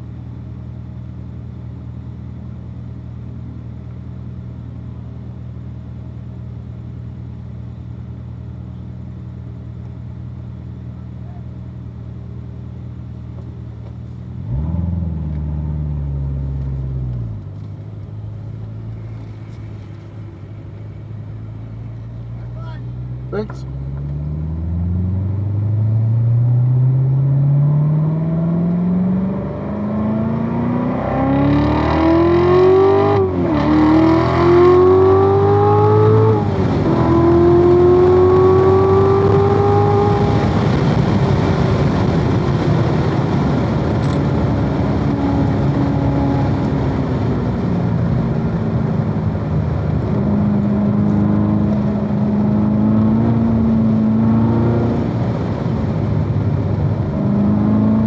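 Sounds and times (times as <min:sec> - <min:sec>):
car engine accelerating hard: 0:13.3 - 0:58.0.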